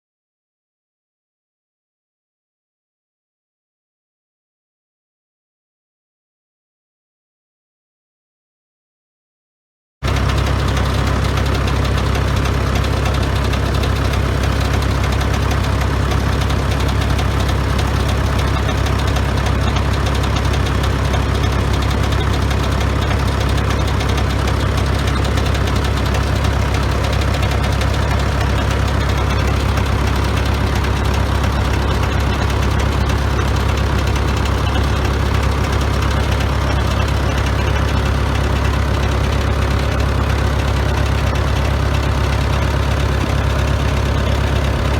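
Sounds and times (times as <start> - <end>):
tractor diesel engine running: 10.0 - 44.9.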